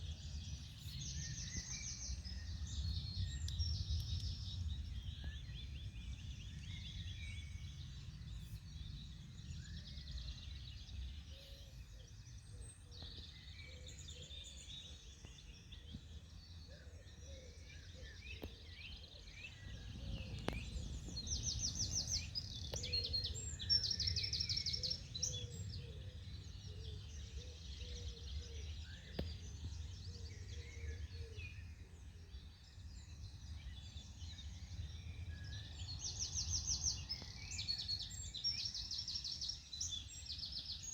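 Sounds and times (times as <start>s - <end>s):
songbirds singing and calling: 0.0s - 40.9s
steady low rumble: 19.6s - 23.6s.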